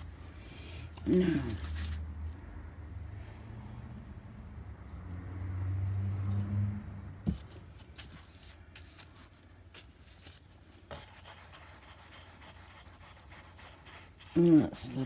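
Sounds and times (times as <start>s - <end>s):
paintbrush strokes on canvas: 10.2s - 15.0s.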